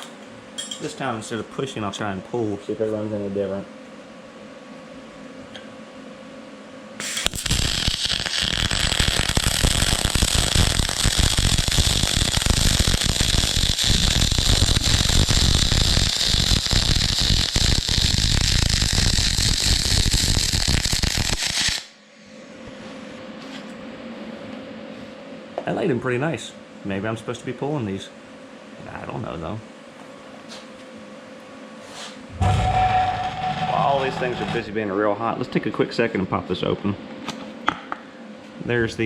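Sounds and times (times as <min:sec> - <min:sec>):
welding arc crackling hiss: 0:07.0 - 0:22.0.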